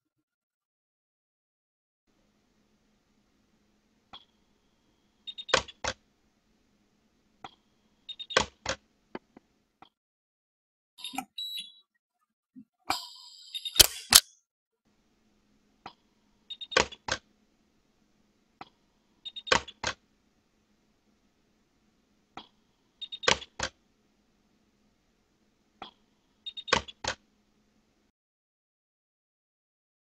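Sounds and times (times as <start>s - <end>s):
faint steady hum: 2.1s - 9.8s, 14.9s - 28.1s
mechanism clicking: 13.8s - 14.3s.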